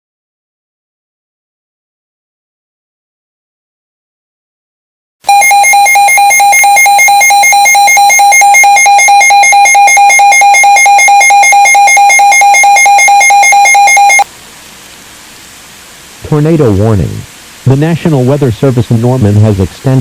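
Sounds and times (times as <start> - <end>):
electronic alarm tone: 5.3 - 14.3
faint hiss: 14.2 - 20.0.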